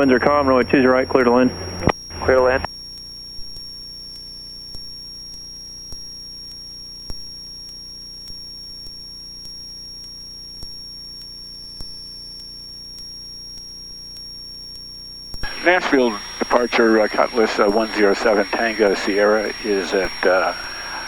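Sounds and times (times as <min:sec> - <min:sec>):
aircraft engine drone: 0:00.0 - 0:02.7, 0:15.4 - 0:21.0
high-pitched electrical whine: 0:00.0 - 0:21.0
faint clicks: 0:03.0 - 0:21.0.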